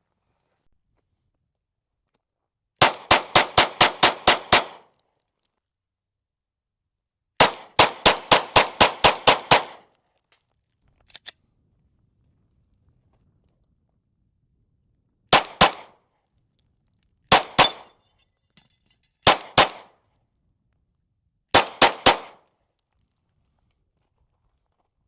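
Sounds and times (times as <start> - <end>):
pistol shots with echo: 2.8 - 4.9, 7.4 - 9.8, 15.3 - 16.0, 17.3 - 17.9, 19.2 - 19.9, 21.5 - 22.4.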